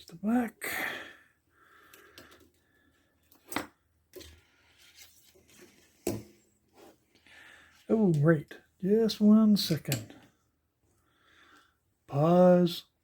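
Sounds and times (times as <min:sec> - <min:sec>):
faint rustling of tools: 0:01.6 - 0:08.7.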